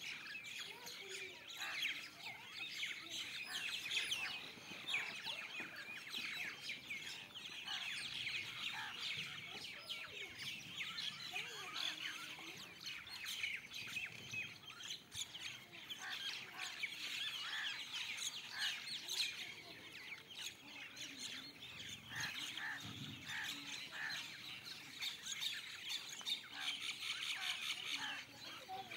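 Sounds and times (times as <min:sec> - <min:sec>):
flock of small birds chirping: 0:00.0 - 0:28.9.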